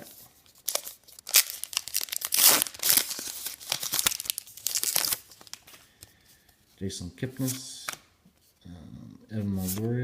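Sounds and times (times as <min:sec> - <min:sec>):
foil wrapper tearing and crinkling: 0:00.6 - 0:05.7.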